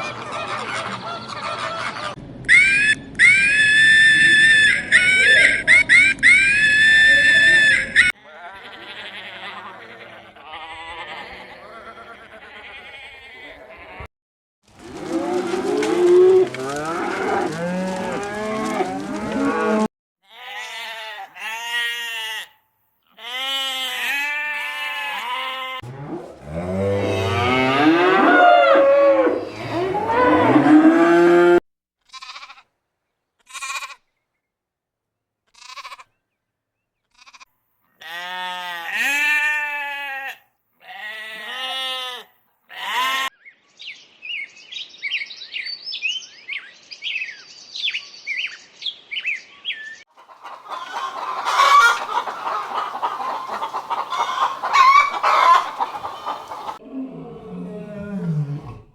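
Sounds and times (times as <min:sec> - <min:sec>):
sheep bleating: 0:08.2 - 0:14.1, 0:20.2 - 0:25.9, 0:32.1 - 0:32.6, 0:33.5 - 0:34.0, 0:37.2 - 0:43.3.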